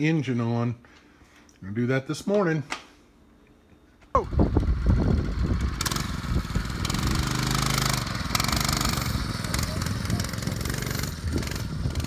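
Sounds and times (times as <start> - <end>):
small engine running: 4.2 - 12.0.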